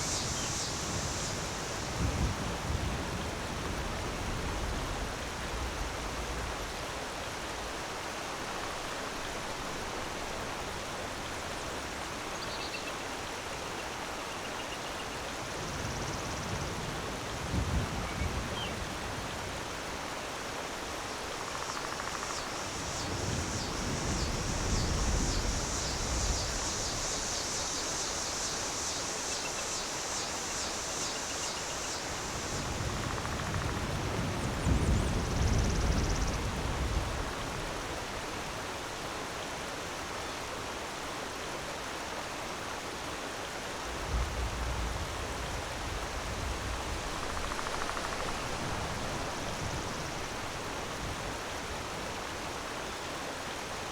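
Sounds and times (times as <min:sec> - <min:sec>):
waterfall rushing: 0:37.9 - 0:53.9.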